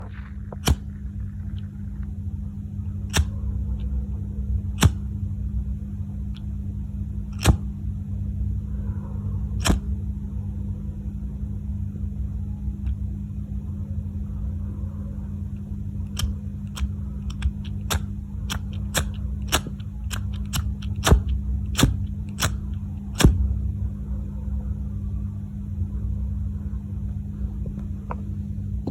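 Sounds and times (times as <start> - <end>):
steady low hum: 0.0 - 28.9
lighter clicking: 3.1 - 3.9, 7.3 - 7.7, 16.1 - 23.4.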